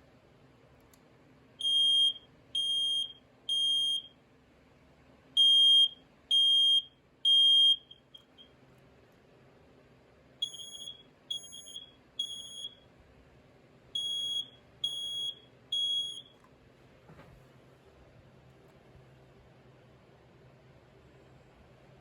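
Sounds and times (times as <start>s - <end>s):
smoke alarm beeping: 1.6s - 4.2s, 5.4s - 8.5s, 10.4s - 12.8s, 13.9s - 16.4s.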